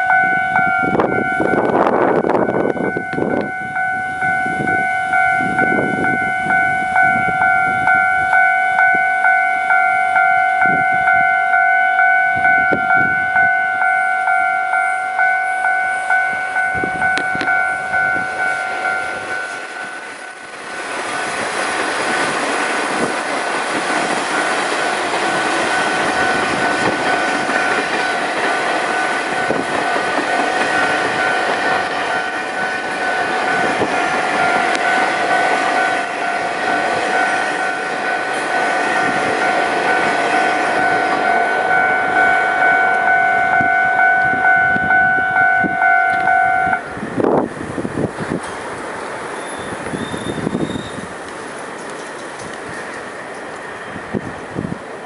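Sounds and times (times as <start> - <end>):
level-crossing bell ringing: 0.0 - 20.5, 24.0 - 46.9
train rumble and wheel clatter: 0.0 - 55.0.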